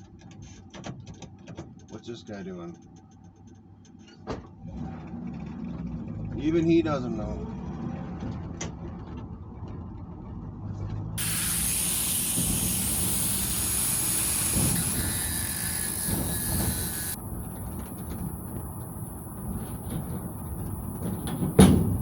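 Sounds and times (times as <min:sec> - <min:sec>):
pickup truck engine rumble: 0:08.1 - 0:22.0
loud even hiss: 0:11.2 - 0:22.0.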